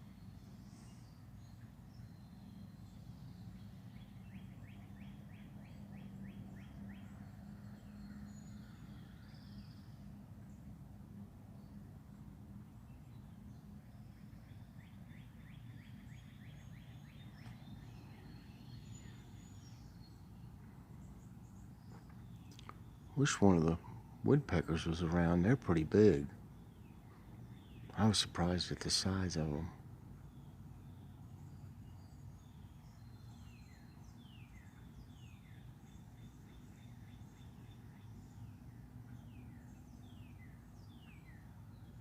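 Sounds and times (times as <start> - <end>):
faint whistled birdsong: 0.0 - 42.0.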